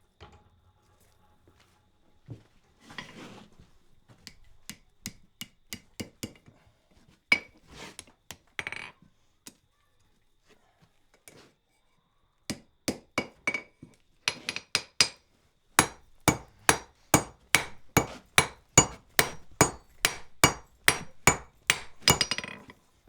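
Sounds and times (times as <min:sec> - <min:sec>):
hammer striking metal on anvil: 0:15.8 - 0:22.6.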